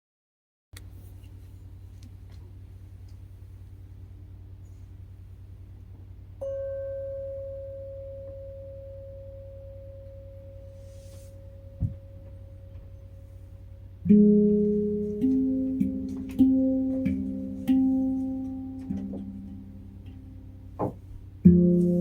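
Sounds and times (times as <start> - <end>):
steady low hum: 0.8 - 22.0
handpan notes ringing: 6.4 - 20.8, 21.4 - 22.0.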